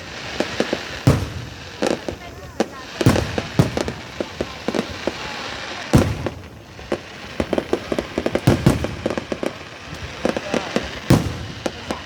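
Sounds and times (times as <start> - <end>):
fireworks bangs and crackles: 0.0 - 12.0
steady hiss: 0.0 - 12.0.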